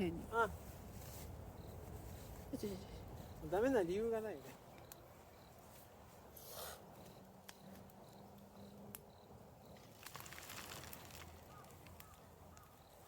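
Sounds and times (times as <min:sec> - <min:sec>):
faint insect chirps: 0:04.4 - 0:05.6, 0:06.4 - 0:13.0.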